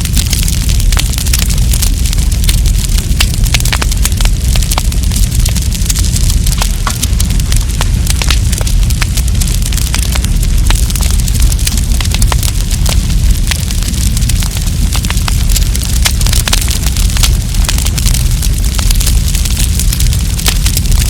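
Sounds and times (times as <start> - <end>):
campfire crackling and popping: 0.0 - 21.0
fire low rumble: 0.0 - 21.0.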